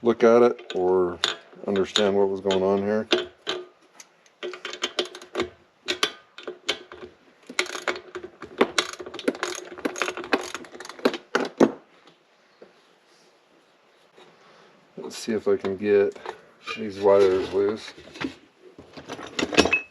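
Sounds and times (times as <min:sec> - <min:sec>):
metal parts clicking and rattling: 0:00.2 - 0:11.7, 0:18.9 - 0:19.9.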